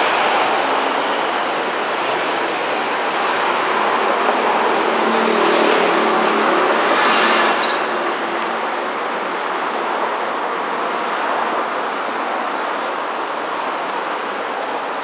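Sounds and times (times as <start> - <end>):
vehicles passing close by: 0.0 - 15.0.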